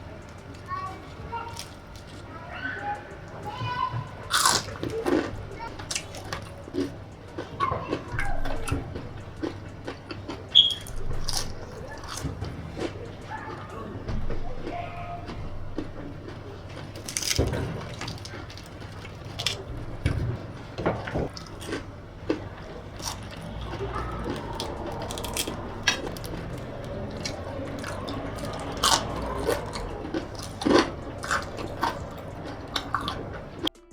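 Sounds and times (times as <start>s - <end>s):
crispy food crunching: 0.0s - 2.4s, 3.4s - 33.7s.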